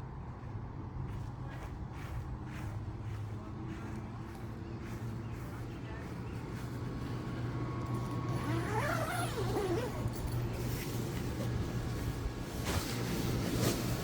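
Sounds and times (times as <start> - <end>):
pet whining: 8.4 - 10.3.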